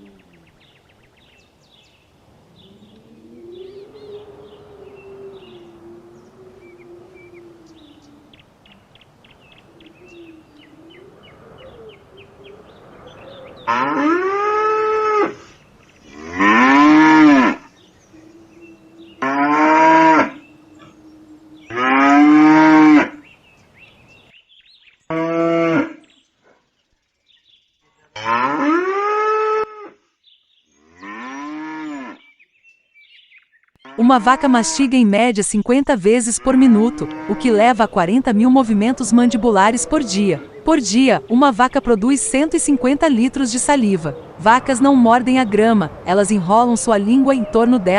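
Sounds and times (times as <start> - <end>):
cows mooing: 0.0 - 0.6, 2.5 - 8.2, 10.1 - 17.7, 18.5 - 23.2, 28.2 - 29.9, 33.9 - 35.0, 36.2 - 47.9.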